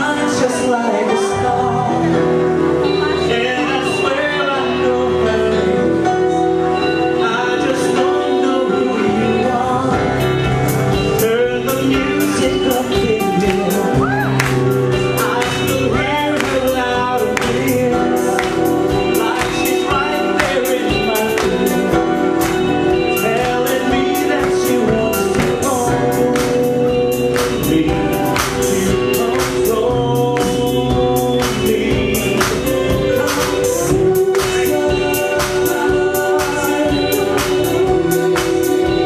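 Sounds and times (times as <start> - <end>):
live band with singing: 0.0 - 39.0
steady drum beat: 10.5 - 39.0.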